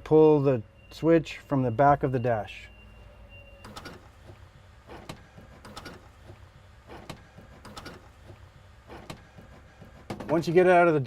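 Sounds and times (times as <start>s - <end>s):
faint irregular clicks and knocks: 3.6s - 10.5s.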